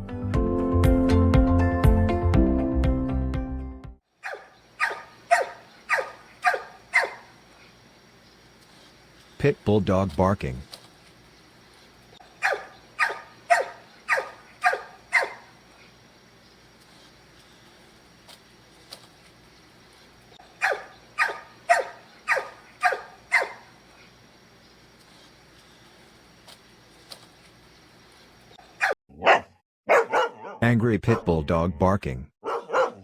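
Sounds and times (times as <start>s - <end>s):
dog barking sharply: 4.2s - 7.3s, 12.4s - 15.5s, 20.6s - 23.7s, 28.8s - 31.3s, 32.4s - 33.0s.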